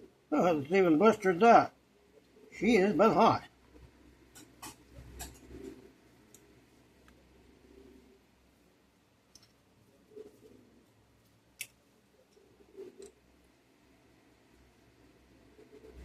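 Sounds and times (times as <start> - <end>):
faint clicks of small tools: 9.3 - 9.6, 11.2 - 12.4.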